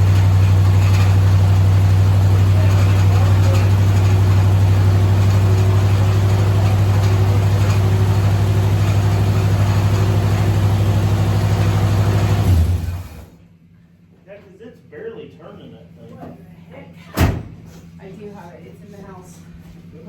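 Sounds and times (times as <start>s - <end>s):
motor humming: 0.0s - 13.4s.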